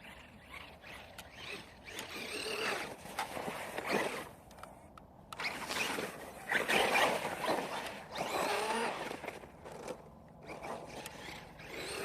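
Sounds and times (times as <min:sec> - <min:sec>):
electric motor whining: 0:06.6 - 0:12.0.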